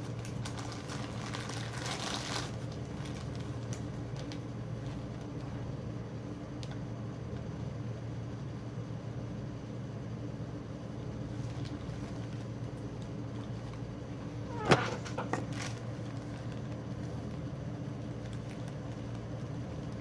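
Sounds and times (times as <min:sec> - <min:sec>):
packaging snapping and crackling: 0:00.0 - 0:05.4, 0:14.5 - 0:17.4, 0:18.2 - 0:20.0
steady low hum: 0:00.0 - 0:20.0.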